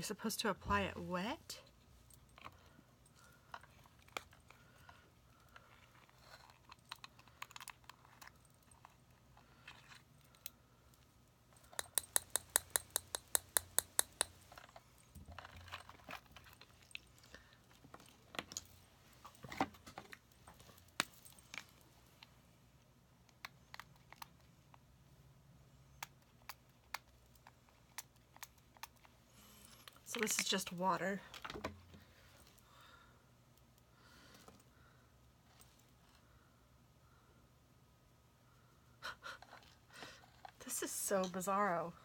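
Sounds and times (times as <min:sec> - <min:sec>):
clicks and taps of packaging: 0:11.8 - 0:14.4.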